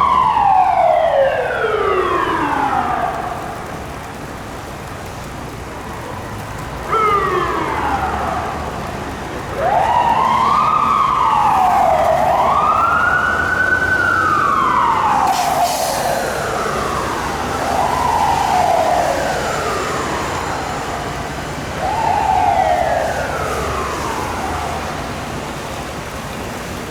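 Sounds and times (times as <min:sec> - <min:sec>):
electronic siren sweeping: 0:09.6 - 0:25.2.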